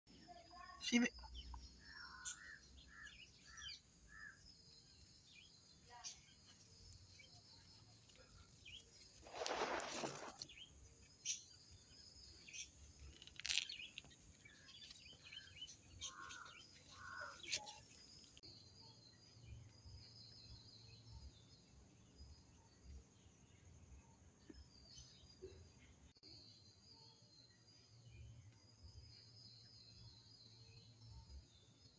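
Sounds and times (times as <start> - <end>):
birds chirping: 0.3 - 21.5.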